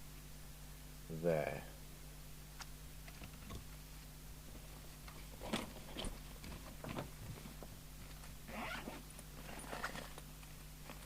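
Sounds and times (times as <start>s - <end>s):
low electrical hum: 0.0s - 11.0s
equipment handling clicks and rustles: 5.1s - 11.0s.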